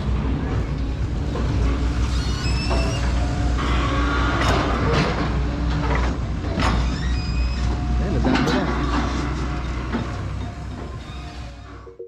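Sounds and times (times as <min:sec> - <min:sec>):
diesel excavator engines running: 0:00.0 - 0:12.0
machinery squeaks: 0:01.8 - 0:05.6, 0:06.5 - 0:11.9.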